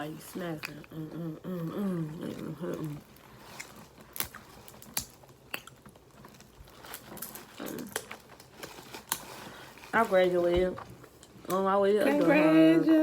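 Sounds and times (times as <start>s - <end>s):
crab shells cracking: 3.1s - 9.3s.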